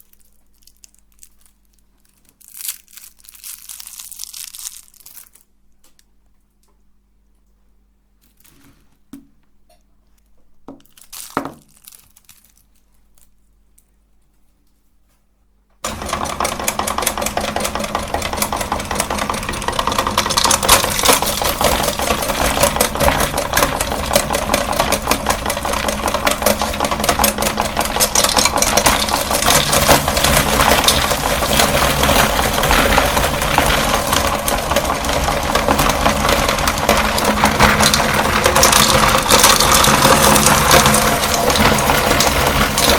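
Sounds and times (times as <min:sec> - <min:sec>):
hard candy crunching: 0:00.0 - 0:06.1, 0:10.2 - 0:13.9, 0:15.9 - 0:42.9
meat grinder motor humming: 0:15.8 - 0:42.9.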